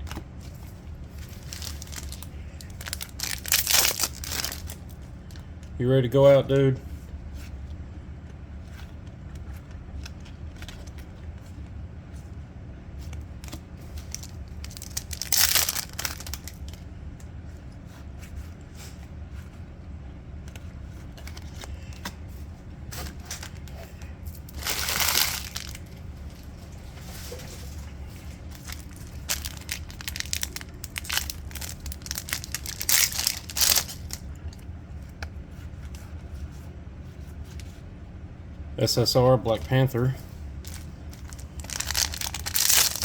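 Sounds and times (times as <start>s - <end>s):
steady low hum: 0.0s - 43.0s
wrappers tearing and crinkling: 0.1s - 5.0s, 13.4s - 16.8s, 23.0s - 34.3s, 40.6s - 43.0s.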